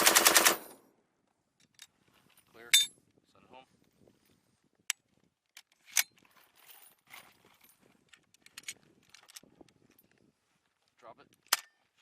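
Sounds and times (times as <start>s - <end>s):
metallic clicks of equipment: 5.5s - 10.2s, 11.3s - 12.0s.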